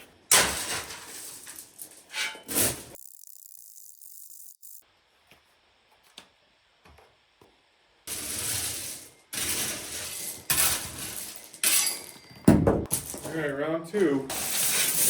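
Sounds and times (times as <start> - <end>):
shovel scraping gritty material: 8.1 - 11.4, 14.0 - 15.0.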